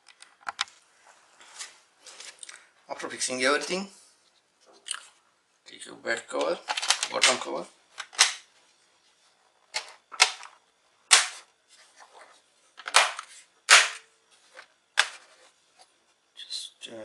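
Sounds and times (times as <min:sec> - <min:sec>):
plastic parts clicking: 0:06.4 - 0:07.4.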